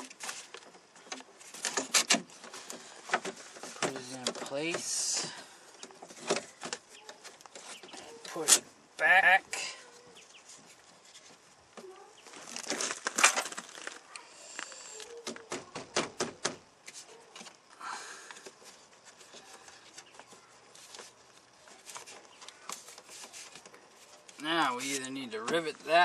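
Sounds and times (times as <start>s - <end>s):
plastic parts clicking and knocking: 0.0s - 8.6s.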